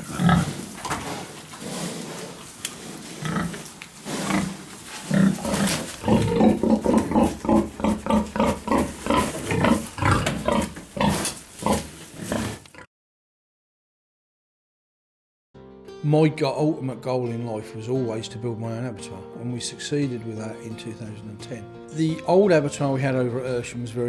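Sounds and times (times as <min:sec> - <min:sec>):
pigs grunting: 0:00.0 - 0:12.9.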